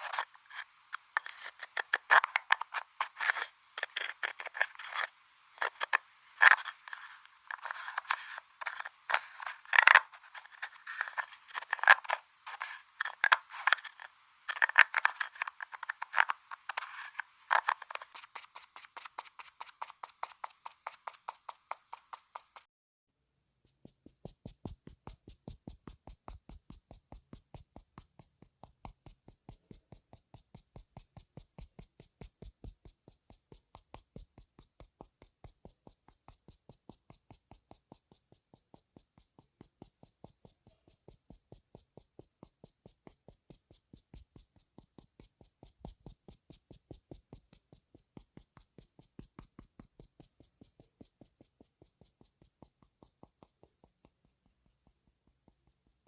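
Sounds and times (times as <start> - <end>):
soft tapping of makeup on face: 23.7 - 56.0.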